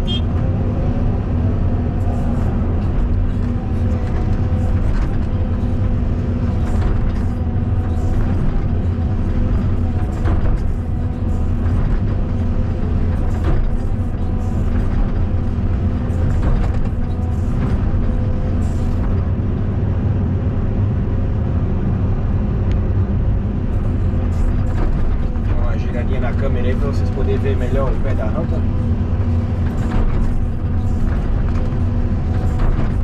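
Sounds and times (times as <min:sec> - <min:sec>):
excavator diesel engine running: 0:00.0 - 0:33.0
knocks and scrapes: 0:02.2 - 0:19.3, 0:23.7 - 0:33.0.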